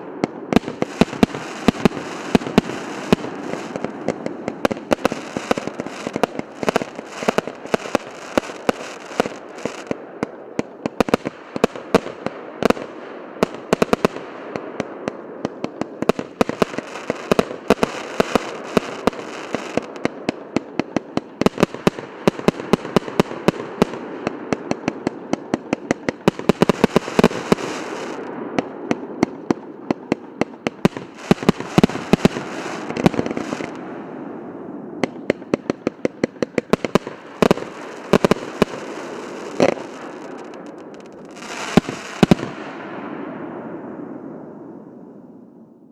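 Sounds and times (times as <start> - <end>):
firework bangs and crackles: 0.0 - 45.1.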